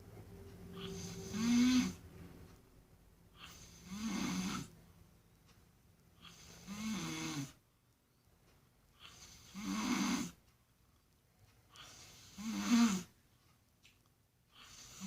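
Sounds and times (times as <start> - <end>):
baboon snoring: 0.8 - 2.0, 3.4 - 4.7, 6.2 - 7.6, 9.0 - 10.4, 11.8 - 13.1, 14.6 - 15.0.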